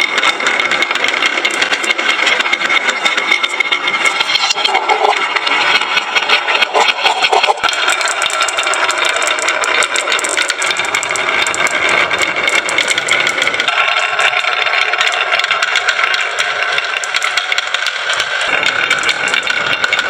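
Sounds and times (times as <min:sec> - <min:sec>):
marbles rattling down a wooden track: 0:00.0 - 0:20.0.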